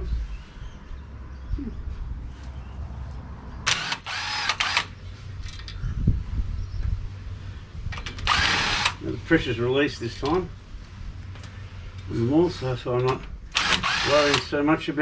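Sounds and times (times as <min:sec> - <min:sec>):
impact wrench bursts: 0:03.7 - 0:05.0, 0:08.0 - 0:09.0, 0:13.5 - 0:14.6.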